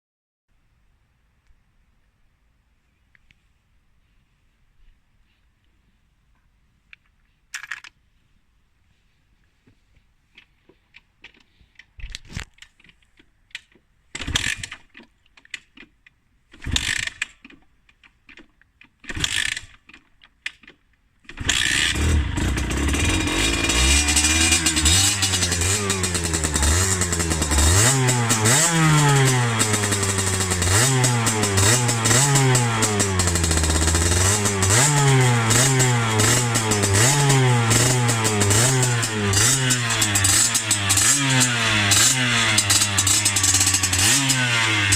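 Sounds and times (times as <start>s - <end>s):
motorcycle engine cranking: 13.6s - 44.9s
two-stroke engine revving: 16.6s - 17.0s, 21.4s - 44.9s.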